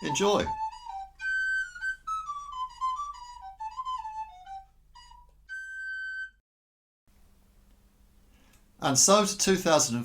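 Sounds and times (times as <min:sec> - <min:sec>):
recorder playing a melody: 0:00.0 - 0:06.4.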